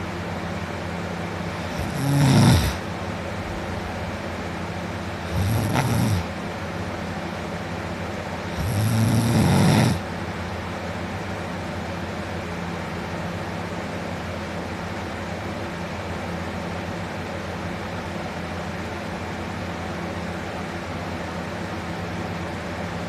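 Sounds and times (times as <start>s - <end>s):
steady background hum: 0.0s - 23.0s
man snoring loudly: 1.5s - 2.9s, 5.2s - 6.3s, 8.5s - 10.1s.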